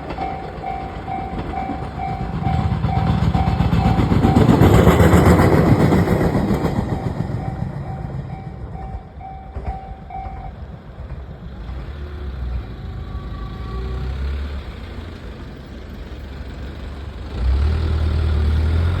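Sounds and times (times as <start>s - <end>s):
level crossing warning bell: 0.0s - 5.1s, 6.9s - 10.6s
vehicle engines running: 0.0s - 19.0s.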